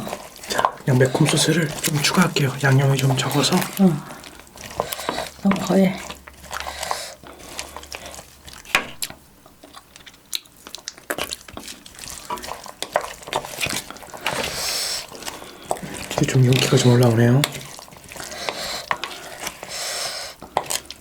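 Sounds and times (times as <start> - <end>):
spoon stirring rice in bowl: 11.2 - 19.7.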